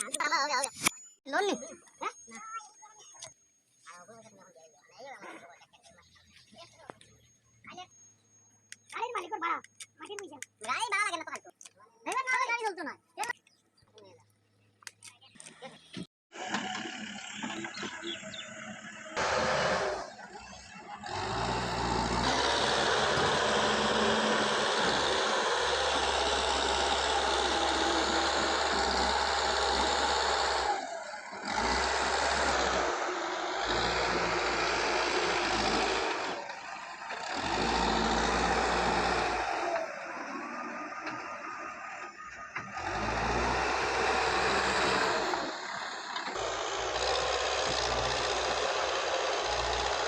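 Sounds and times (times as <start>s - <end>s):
heavy diesel engine running: 16.4s - 50.0s.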